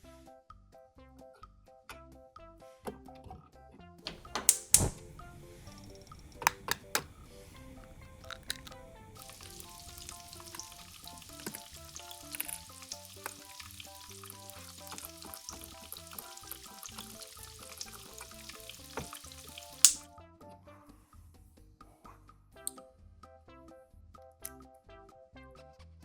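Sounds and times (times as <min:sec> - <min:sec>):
light background music: 0:00.0 - 0:26.0
sharp loud click: 0:04.1 - 0:05.1, 0:19.8 - 0:20.0
frying sizzle with pops: 0:04.1 - 0:20.1.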